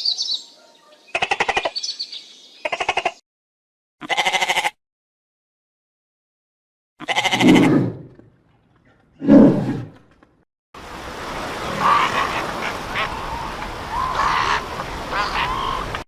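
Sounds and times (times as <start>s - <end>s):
harsh animal calls: 7.0s - 8.1s, 11.6s - 16.0s.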